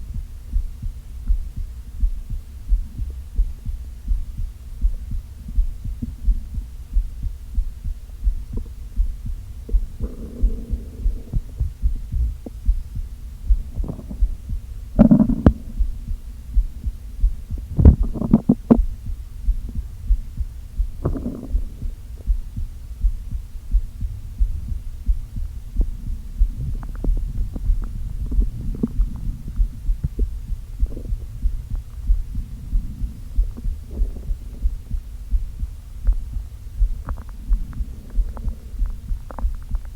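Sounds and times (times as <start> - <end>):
low pulse-like thumping: 0.0 - 39.9
stomach growling: 8.3 - 39.9.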